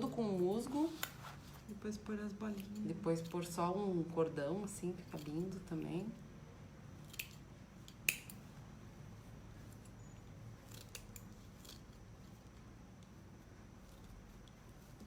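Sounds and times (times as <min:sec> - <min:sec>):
low room hum: 0:00.0 - 0:15.0
scissors snipping: 0:02.5 - 0:03.5, 0:05.0 - 0:06.0, 0:07.0 - 0:08.4, 0:10.6 - 0:12.0.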